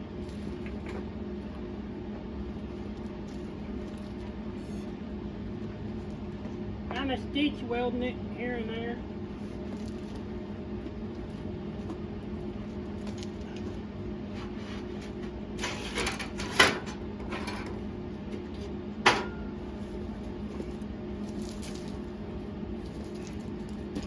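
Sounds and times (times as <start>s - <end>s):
steady low machine hum: 0.0s - 24.0s.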